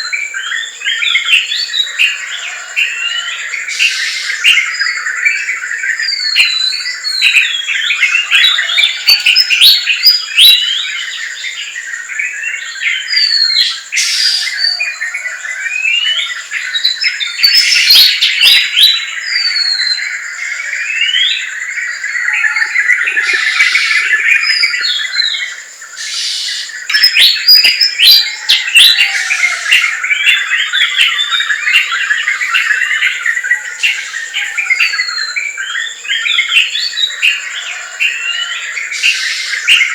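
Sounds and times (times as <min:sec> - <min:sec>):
birds chirping and calling: 0:00.0 - 0:39.9.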